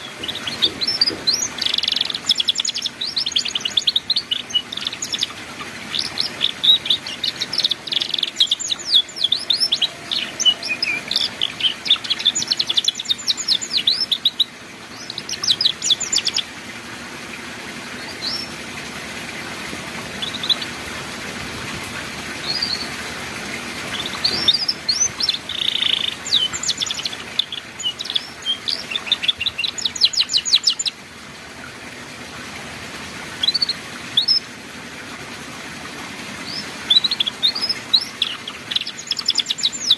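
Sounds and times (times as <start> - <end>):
canary singing trills: 0.0 - 16.6, 17.9 - 18.6, 20.1 - 20.8, 22.4 - 23.1, 23.8 - 31.0, 33.3 - 34.4, 36.4 - 39.9.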